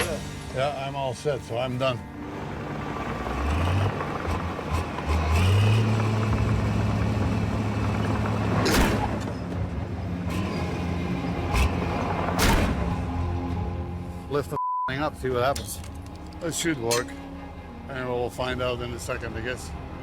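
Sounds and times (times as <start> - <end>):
heavy diesel engine running: 2.1 - 8.6.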